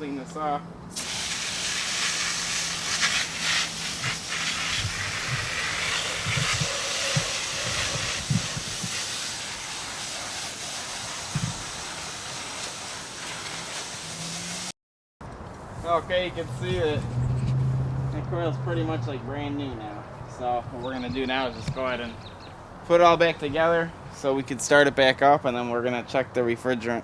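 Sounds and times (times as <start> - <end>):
hose spraying water: 0.9 - 14.8.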